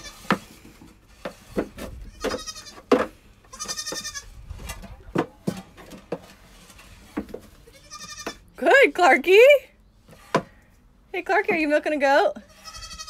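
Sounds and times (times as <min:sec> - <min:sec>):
goat bleating: 0:00.0 - 0:00.2, 0:02.0 - 0:02.9, 0:03.5 - 0:04.3, 0:07.6 - 0:08.4, 0:12.4 - 0:13.0.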